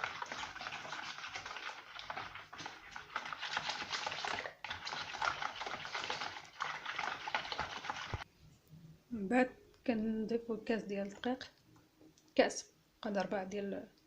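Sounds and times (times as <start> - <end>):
batter beaten by hand in bowl: 0.0 - 8.3.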